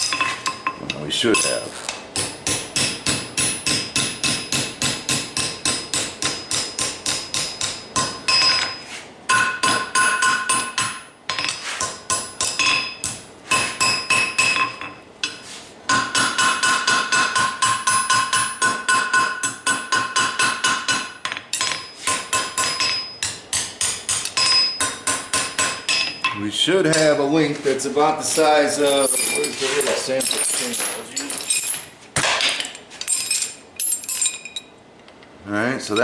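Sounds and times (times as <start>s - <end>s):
hammer striking steel on anvil: 2.2s - 27.2s.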